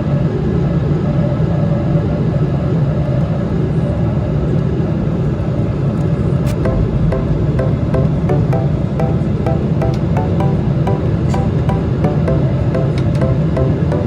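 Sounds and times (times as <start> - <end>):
jetliner engine rumble in flight: 0.0 - 7.4.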